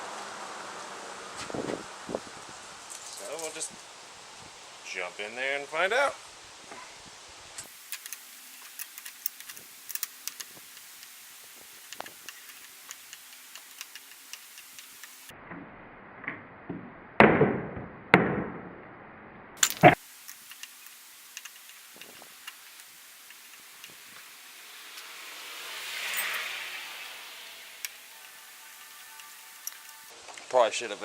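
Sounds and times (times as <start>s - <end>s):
hand tools clicking and tapping: 7.9s - 15.2s, 27.8s - 30.0s
sharp click: 19.6s - 24.0s.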